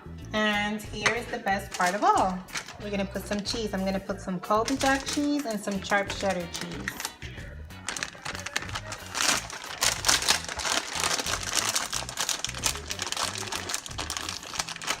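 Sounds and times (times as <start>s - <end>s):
background music: 0.0s - 15.0s
plastic bag crinkling: 1.6s - 3.4s, 4.6s - 7.2s, 7.8s - 15.0s.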